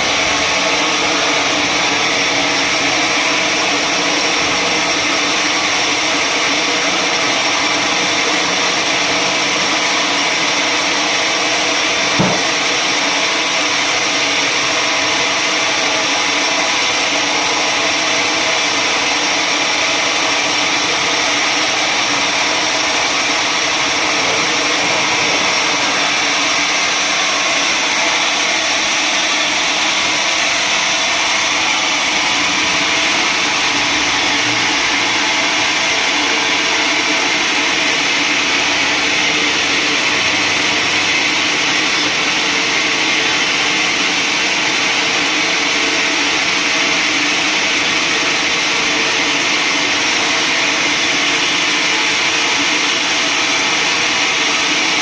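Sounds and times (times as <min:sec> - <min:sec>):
sawmill saw whining: 0:00.0 - 0:55.0
short knock: 0:12.2 - 0:12.5.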